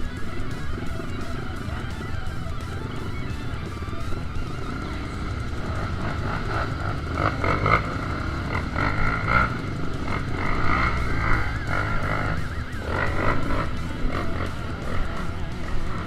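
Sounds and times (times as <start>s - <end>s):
dirt bike engine running: 0.0s - 16.0s.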